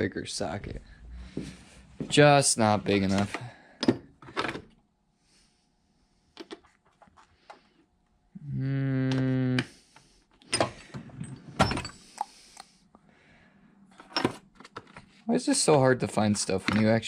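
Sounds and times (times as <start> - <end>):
steady low hum: 0.0 - 3.8.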